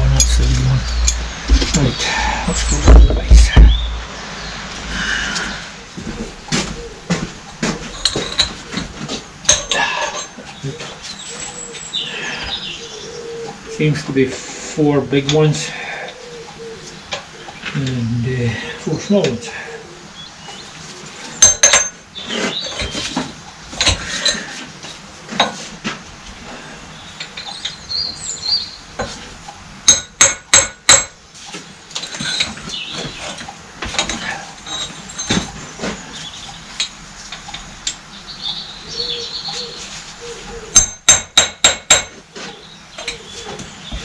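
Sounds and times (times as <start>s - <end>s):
metal tools clinking: 8.0s - 8.9s, 9.5s - 10.5s, 21.4s - 22.0s, 31.9s - 32.6s, 34.0s - 35.7s
hammer striking metal: 29.9s - 31.2s, 40.8s - 42.2s.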